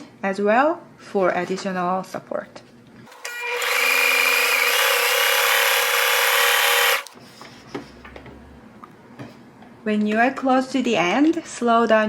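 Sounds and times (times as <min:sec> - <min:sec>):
sewing machine stitching: 0:03.1 - 0:07.2.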